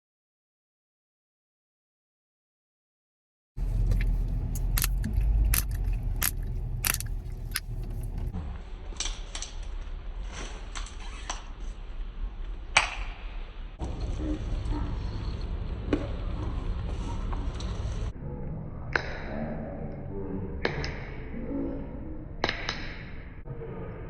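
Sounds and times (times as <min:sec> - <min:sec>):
steady low rumble: 0:03.6 - 0:10.8, 0:11.7 - 0:24.0
chewing gum snapping: 0:03.9 - 0:08.1.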